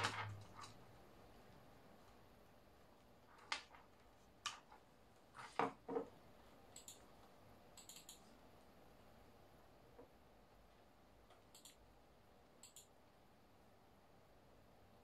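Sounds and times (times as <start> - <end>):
faint high ticks: 7.8 - 8.2, 11.3 - 11.8, 12.6 - 12.9.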